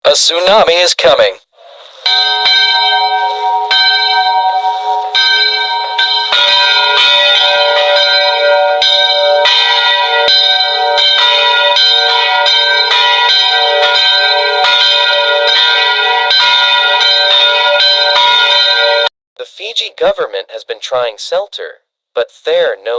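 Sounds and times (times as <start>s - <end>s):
bells ringing alert tone: 2.0s - 19.1s.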